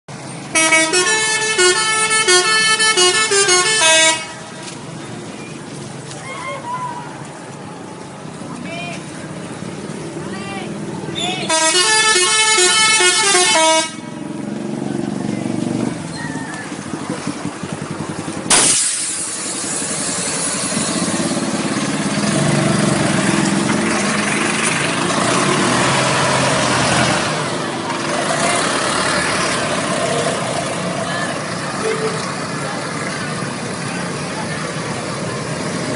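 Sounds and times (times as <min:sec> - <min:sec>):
steady background noise: 0:00.1 - 0:35.9
musical air horn tune: 0:00.6 - 0:04.4, 0:11.5 - 0:14.0
diesel coach engine running: 0:09.2 - 0:35.9
sudden loud hiss: 0:18.5 - 0:21.4.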